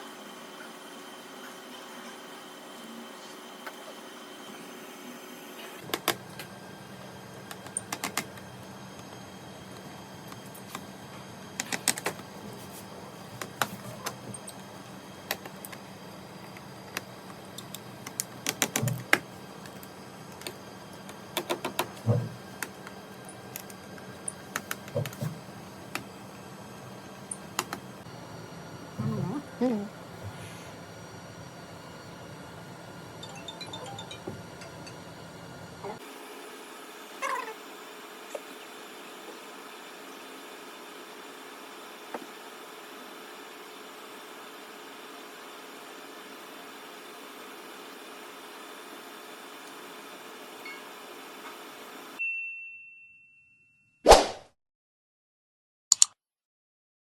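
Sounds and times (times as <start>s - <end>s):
steady hum: 0.0s - 44.4s.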